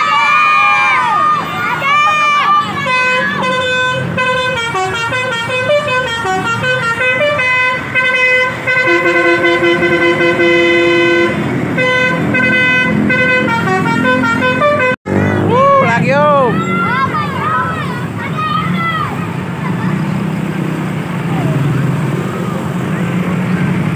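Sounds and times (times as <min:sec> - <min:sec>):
bus engine running: 0:00.0 - 0:23.9
musical bus horn melody: 0:02.6 - 0:15.4.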